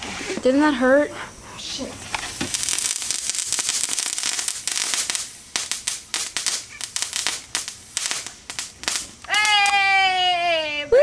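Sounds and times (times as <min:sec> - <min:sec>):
firework hissing and crackling: 0:00.0 - 0:10.9
sharp cracks and pops: 0:02.1 - 0:09.9.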